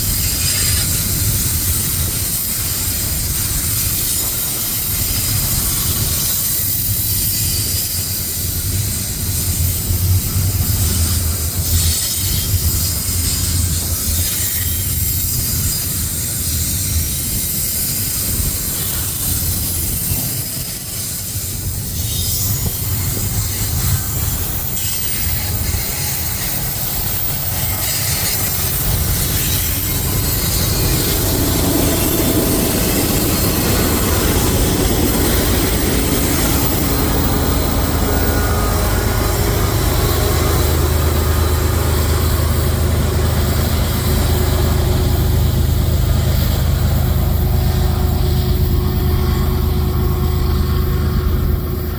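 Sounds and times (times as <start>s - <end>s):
faint high wheel squeal: 0.0s - 51.9s
freight train cars rolling past: 0.0s - 51.9s
steady low hum: 23.8s - 51.9s.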